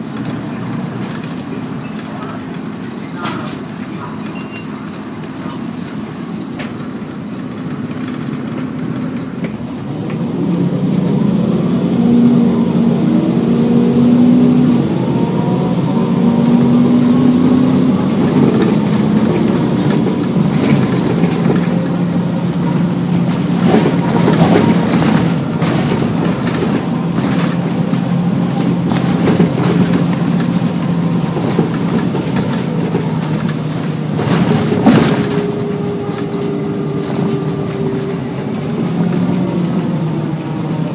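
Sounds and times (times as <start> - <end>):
bus diesel engine accelerating: 0.0 - 40.9
bus body knocks and rattles: 17.0 - 40.9.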